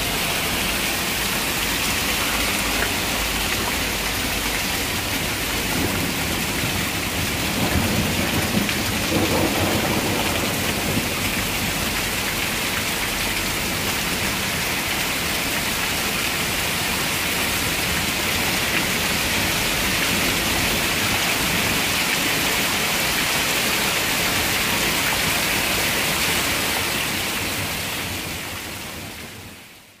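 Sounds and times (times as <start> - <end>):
heavy rain falling: 0.0 - 30.0
thunder rumbling: 5.2 - 12.0.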